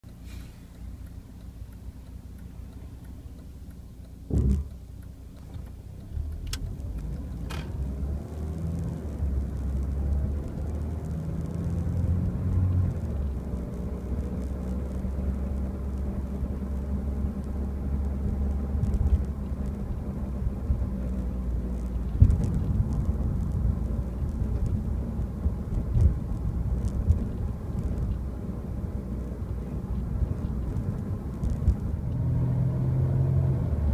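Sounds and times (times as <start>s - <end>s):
car engine rumble and drone: 0.0s - 33.9s
knocking noise: 4.3s - 4.7s
loud thump: 4.3s - 4.7s.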